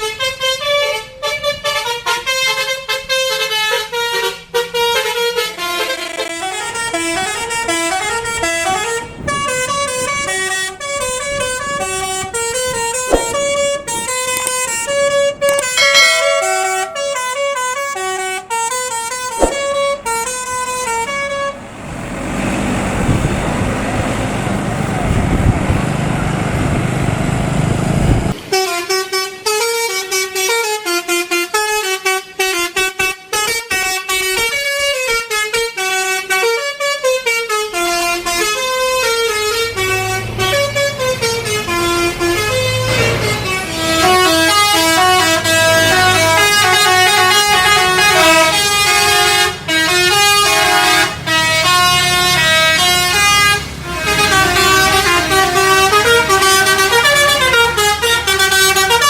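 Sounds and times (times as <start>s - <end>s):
bus horn playing a melody: 0.0s - 13.3s, 35.0s - 59.0s.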